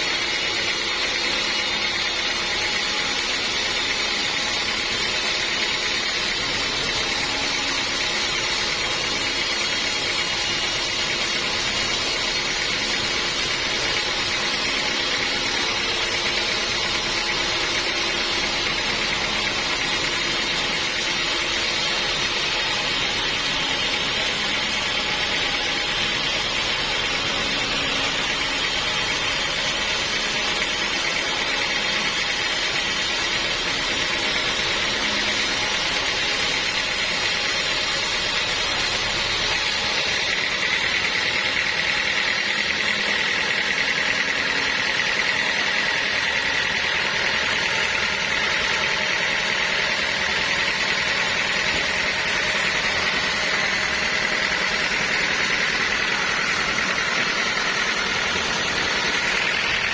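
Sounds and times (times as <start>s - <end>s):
band saw cutting log: 0.0s - 59.9s.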